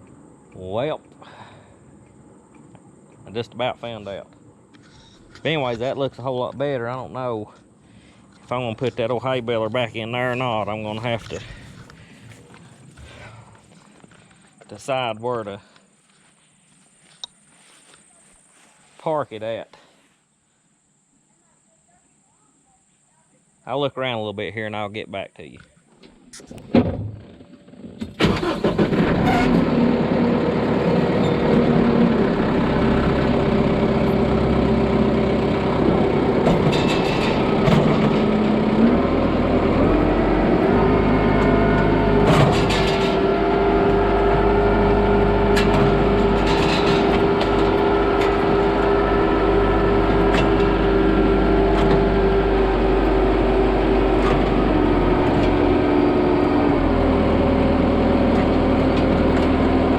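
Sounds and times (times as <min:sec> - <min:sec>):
tractor engine running: 0:05.2 - 0:14.5, 0:27.6 - 0:59.9.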